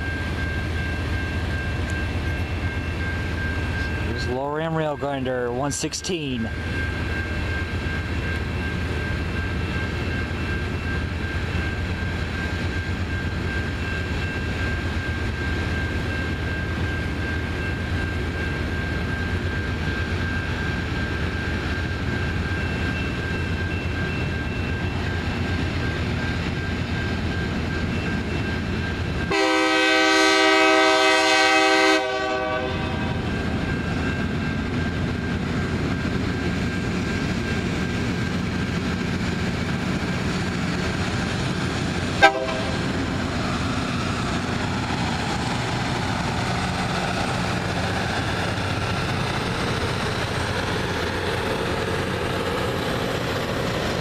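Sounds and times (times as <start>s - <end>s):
train air horn blast: 29.3s - 33.2s, 42.2s - 42.9s.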